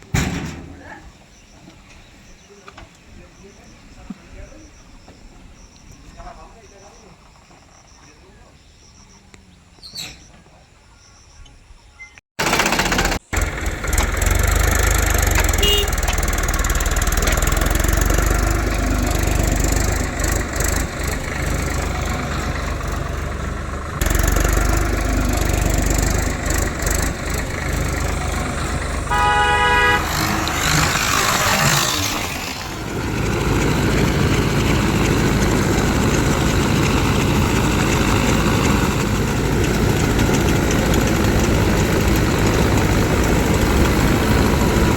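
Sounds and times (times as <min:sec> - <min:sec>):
farm machine engine running: 0:12.4 - 0:44.9
horn blast: 0:15.3 - 0:16.5, 0:28.2 - 0:34.0.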